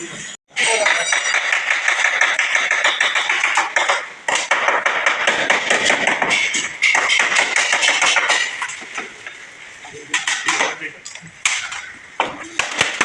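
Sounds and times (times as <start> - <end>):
hammer tapping steel panel: 0.8 - 9.1.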